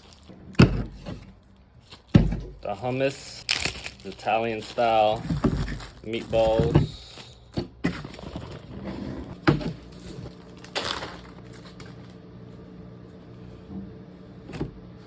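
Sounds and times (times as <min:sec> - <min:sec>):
packaging rustle: 0:00.0 - 0:00.3, 0:01.5 - 0:08.7, 0:09.9 - 0:12.1
steady low hum: 0:04.6 - 0:15.0.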